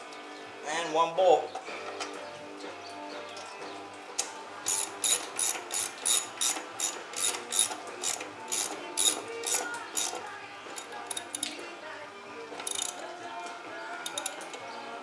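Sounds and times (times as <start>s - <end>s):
ratchet wrench clicking: 4.2s - 11.6s, 12.6s - 13.1s, 14.0s - 14.6s.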